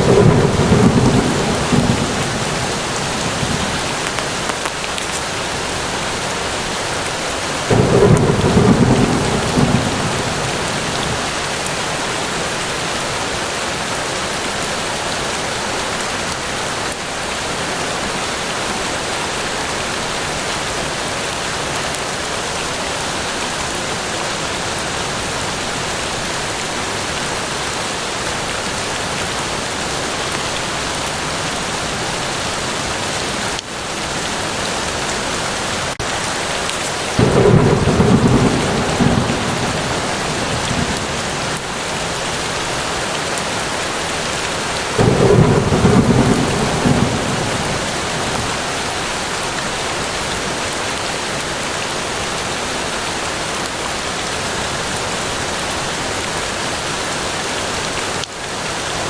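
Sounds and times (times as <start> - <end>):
thunder rumble: 0.0 - 4.9, 7.6 - 11.4, 37.2 - 42.6, 45.0 - 48.9
steady rain falling: 0.0 - 59.0.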